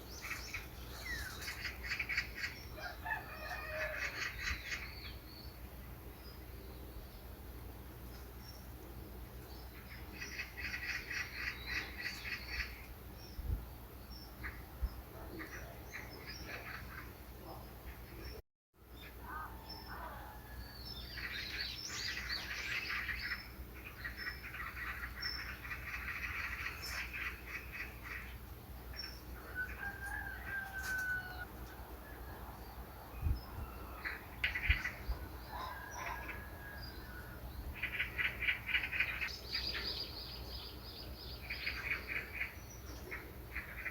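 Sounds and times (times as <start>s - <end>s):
small birds chirping: 0.0s - 43.9s.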